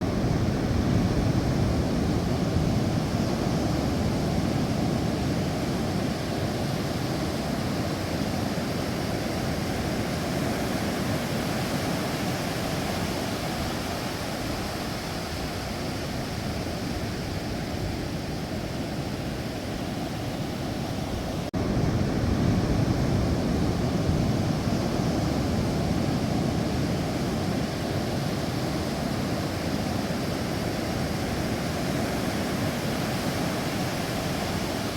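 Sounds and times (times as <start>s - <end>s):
sea waves washing ashore: 0.0s - 34.9s.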